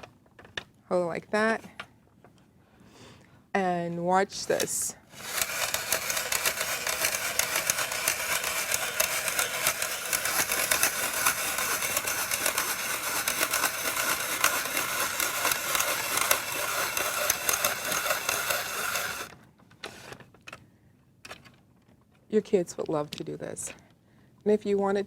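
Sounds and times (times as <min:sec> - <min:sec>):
spiralizer crunching carrot: 0:04.6 - 0:19.4.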